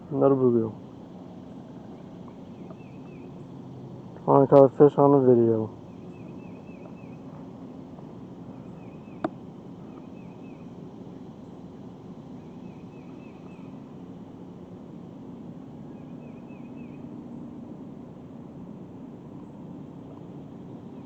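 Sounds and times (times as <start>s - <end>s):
small bird chirping: 1.4s - 3.8s, 5.8s - 7.8s, 8.5s - 11.2s, 12.4s - 13.9s, 15.8s - 17.1s.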